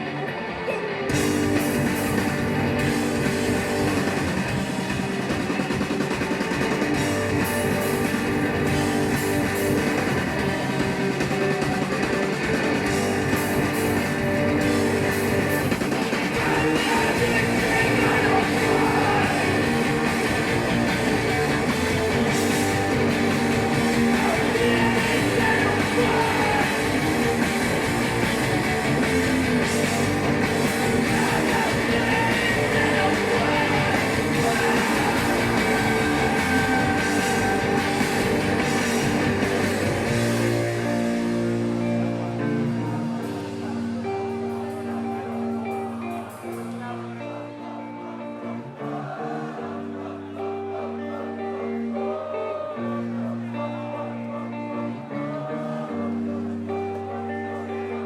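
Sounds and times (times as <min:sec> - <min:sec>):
live rock band playing: 0:00.0 - 0:58.0.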